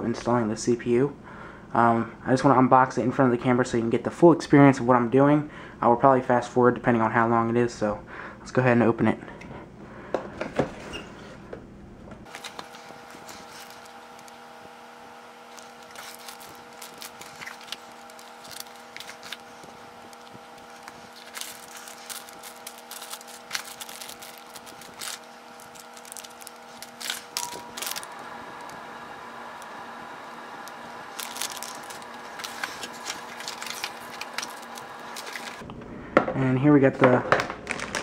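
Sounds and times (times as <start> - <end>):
steady hum: 0.0 - 38.0
cardboard and plastic packaging rustling: 12.2 - 28.8, 30.6 - 35.6, 37.0 - 38.0.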